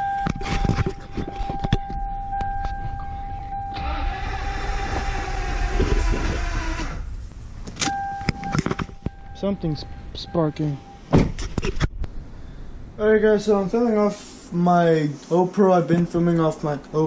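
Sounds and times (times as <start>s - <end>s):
engine cranking on starter: 3.7s - 7.1s
high electronic warning tone: 7.9s - 11.1s.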